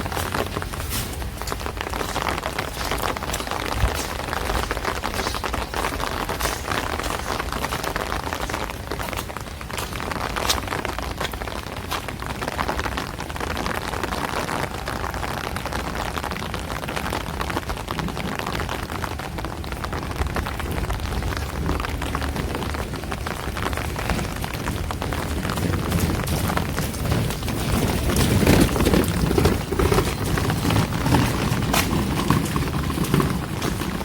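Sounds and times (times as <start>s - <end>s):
rain on hard surfaces: 0.0s - 34.0s
raindrop ticks: 0.0s - 34.0s.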